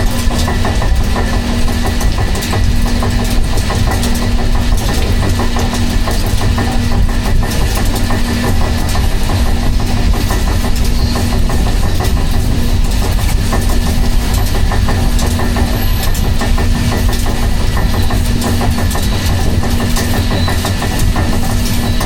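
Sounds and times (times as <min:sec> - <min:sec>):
constant hum: 0:00.0 - 0:22.0
rapid rattling clicks: 0:00.0 - 0:22.0
vehicle rumbling in motion: 0:00.0 - 0:22.0.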